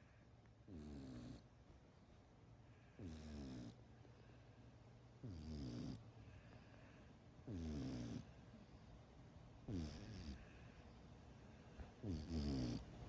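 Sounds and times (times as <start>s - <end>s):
cat snoring: 0.7s - 1.4s, 3.0s - 3.8s, 5.2s - 6.0s, 7.4s - 8.3s, 9.7s - 11.1s, 12.0s - 13.0s.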